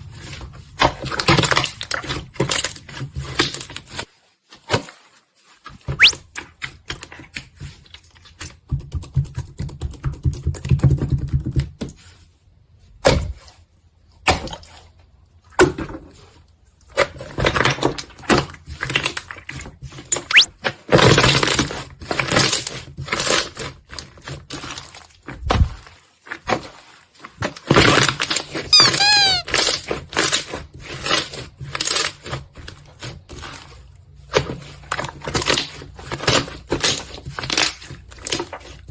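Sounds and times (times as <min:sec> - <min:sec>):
squeaky chirps: 0:06.0 - 0:06.2, 0:28.7 - 0:29.5.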